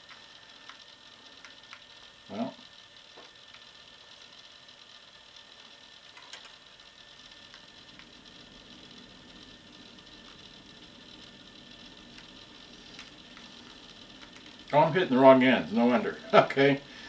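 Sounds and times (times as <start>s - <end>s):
faint steady hiss: 0.0s - 17.0s
faint low hum: 6.1s - 17.0s
light clicks: 7.4s - 14.8s.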